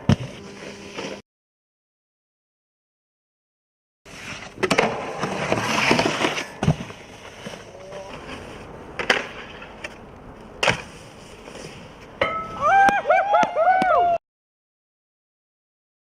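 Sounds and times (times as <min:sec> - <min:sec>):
snowboard scraping and sliding: 0:00.0 - 0:01.2, 0:04.1 - 0:12.2.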